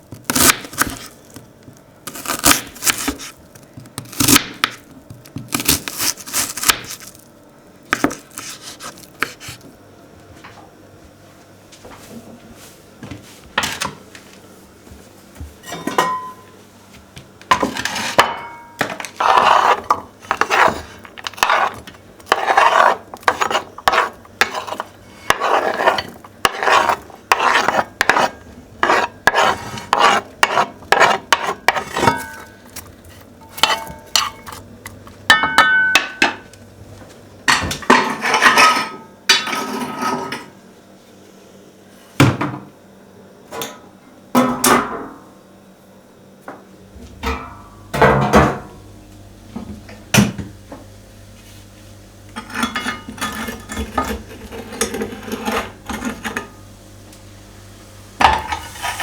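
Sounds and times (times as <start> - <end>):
dishes and cutlery clattering: 15.6 - 16.4.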